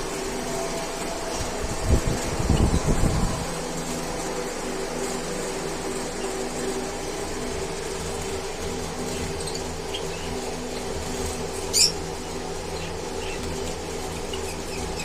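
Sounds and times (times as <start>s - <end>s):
mechanical hum: 0.0s - 15.0s
small birds chirping: 5.6s - 15.0s.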